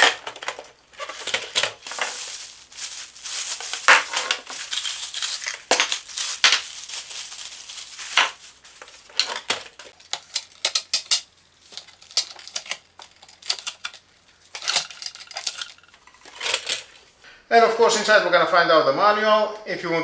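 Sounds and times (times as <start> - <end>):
packaging rustling and scraping: 0.0 - 17.2
hard parts clicking and clinking: 8.1 - 17.0.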